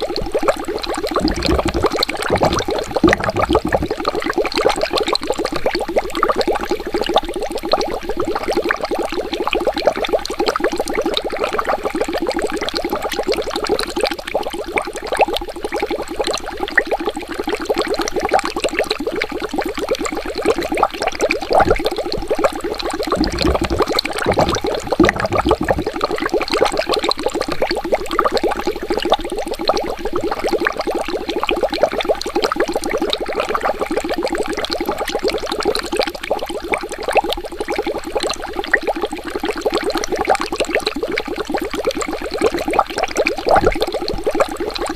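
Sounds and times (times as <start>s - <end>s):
water bubbling: 0.0s - 44.9s
low rumble: 1.2s - 4.0s, 23.2s - 26.0s.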